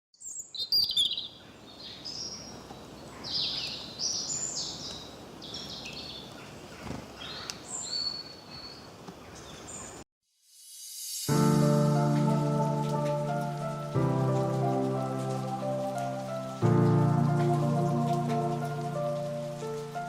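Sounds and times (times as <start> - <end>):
birds chirping: 0.2 - 10.0, 11.5 - 20.0.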